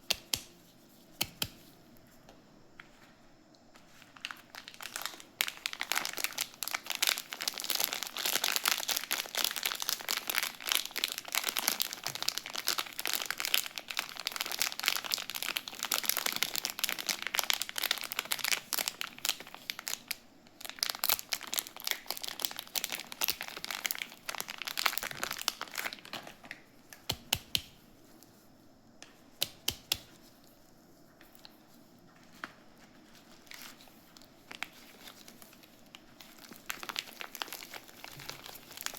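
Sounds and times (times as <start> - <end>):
packaging crinkling and tearing: 3.9 - 26.7, 32.2 - 38.9.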